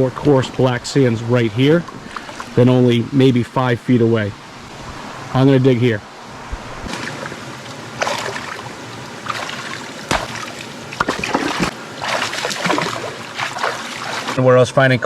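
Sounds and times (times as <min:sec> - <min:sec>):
stream rushing: 0:01.8 - 0:14.5
water splashing: 0:02.0 - 0:02.7, 0:06.5 - 0:14.4
shovel scraping wet gravel: 0:11.0 - 0:14.4.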